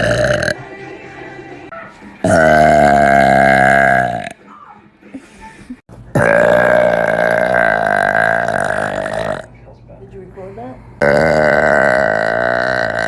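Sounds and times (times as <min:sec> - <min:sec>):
long loud burps: 0:00.0 - 0:00.6, 0:02.2 - 0:04.4, 0:06.1 - 0:09.5, 0:11.0 - 0:13.0.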